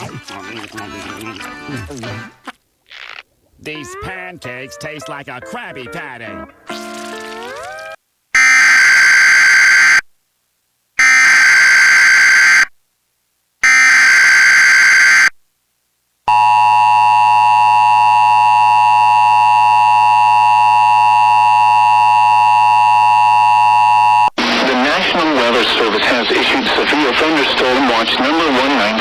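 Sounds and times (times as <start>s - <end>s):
screeching digital data bursts: 13.6s - 15.3s
steady two-tone attention signal: 16.3s - 24.4s.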